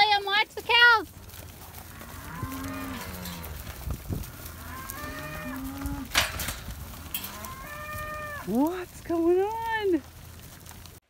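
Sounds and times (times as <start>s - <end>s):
cows mooing: 1.6s - 8.8s.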